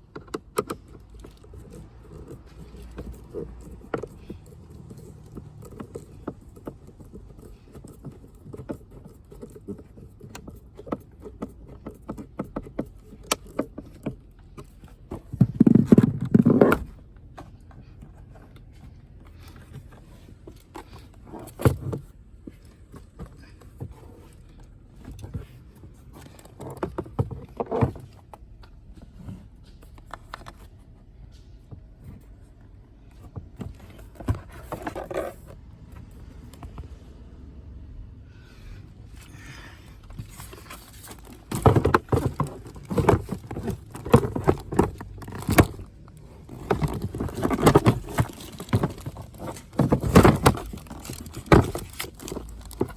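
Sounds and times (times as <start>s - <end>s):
tools and parts clicking and knocking: 0.0s - 32.3s, 33.2s - 35.6s, 40.0s - 52.9s
rattling clatter: 39.4s - 52.9s.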